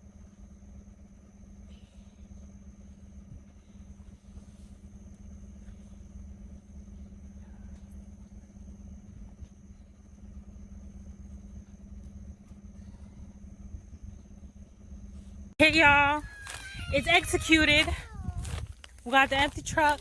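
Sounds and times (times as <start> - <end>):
truck engine humming: 15.6 - 20.0.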